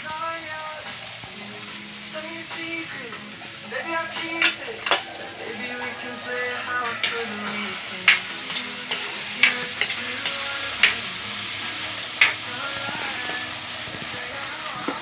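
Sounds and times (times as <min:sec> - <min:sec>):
vegetables sizzling in a pan: 0:00.0 - 0:15.0
spatula scraping pan: 0:03.0 - 0:15.0
spatula striking pan: 0:04.1 - 0:13.5.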